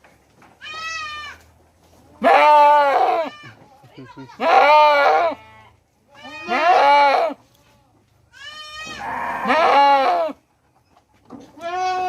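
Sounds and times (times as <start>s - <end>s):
goat bleating: 0.6s - 1.5s, 2.1s - 7.4s, 8.3s - 10.4s, 11.5s - 12.0s.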